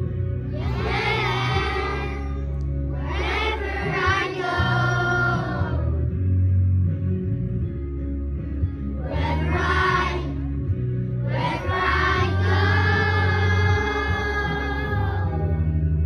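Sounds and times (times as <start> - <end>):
backing track with bass line: 0.0 - 16.0
group singing: 0.6 - 2.4, 3.1 - 5.8, 9.0 - 10.4, 11.3 - 15.6.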